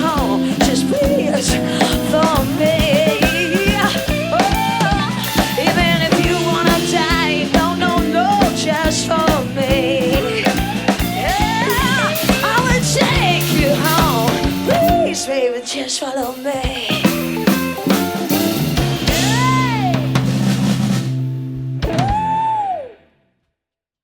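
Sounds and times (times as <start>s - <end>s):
rock band playing: 0.0s - 15.5s, 16.2s - 22.6s.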